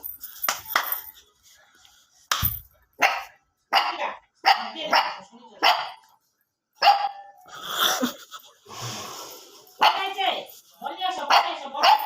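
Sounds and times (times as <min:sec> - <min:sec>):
dog barking: 0:03.0 - 0:06.1, 0:06.8 - 0:07.4, 0:11.3 - 0:12.0.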